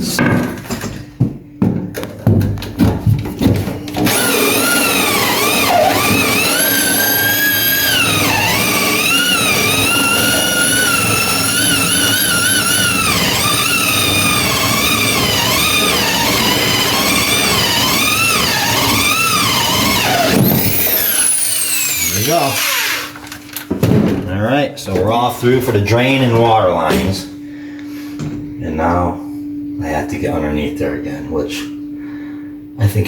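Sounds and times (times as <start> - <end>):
power drill boring into wood: 3.9 - 23.4.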